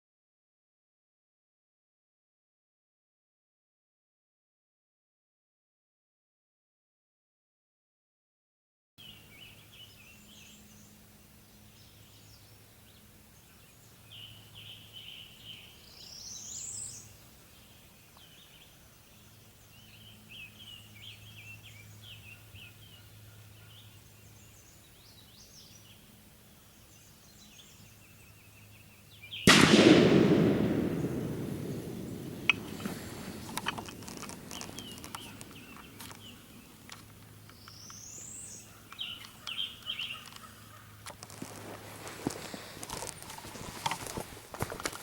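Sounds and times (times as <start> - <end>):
birds chirping: 9.0 - 41.0
low steady hum: 24.0 - 38.8
loud gunshot: 29.5 - 35.0.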